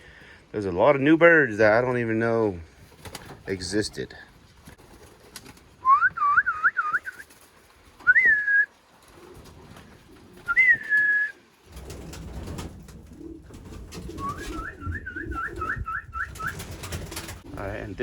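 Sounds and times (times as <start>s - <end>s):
whistled notes: 5.8s - 7.3s, 8.0s - 8.7s, 10.4s - 11.4s, 14.1s - 16.6s
low rustling and rumbling: 11.6s - 18.0s.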